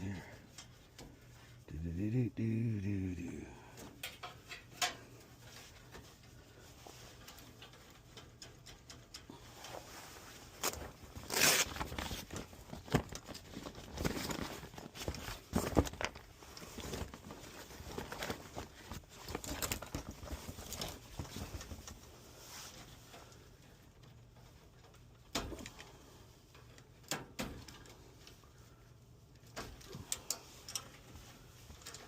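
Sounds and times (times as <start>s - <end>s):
tools scraping and rattling: 3.8s - 23.5s.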